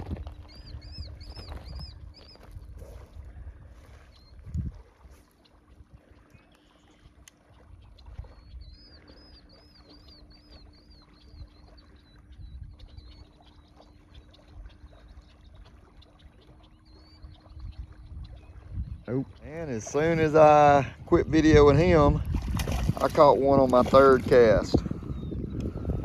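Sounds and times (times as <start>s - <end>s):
small bird singing: 0.2s - 2.6s, 8.2s - 26.0s
water rushing from pump outlet: 19.0s - 25.9s.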